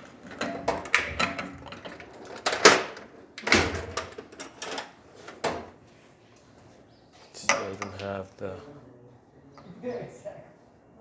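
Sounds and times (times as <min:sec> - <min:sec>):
hard objects knocking and clattering: 0:00.0 - 0:05.6, 0:07.5 - 0:08.2.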